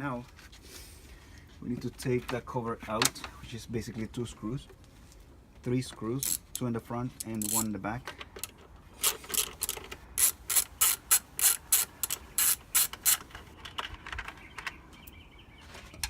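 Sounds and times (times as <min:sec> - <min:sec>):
ratchet clicking: 0:07.2 - 0:07.7, 0:09.0 - 0:13.2.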